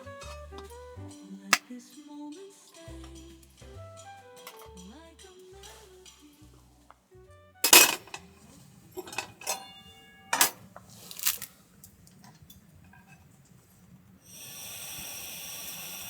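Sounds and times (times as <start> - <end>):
tableware clinking: 4.4 - 4.9, 7.6 - 11.5.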